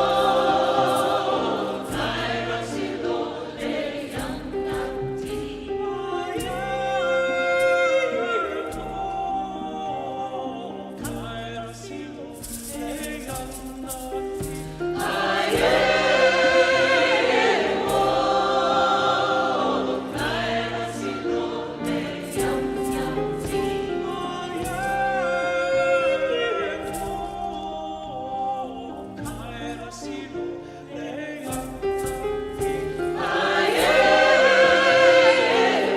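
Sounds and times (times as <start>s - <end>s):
vocal ensemble singing in harmony: 0.0s - 35.9s
light percussive hits: 12.4s - 25.3s, 31.4s - 35.9s.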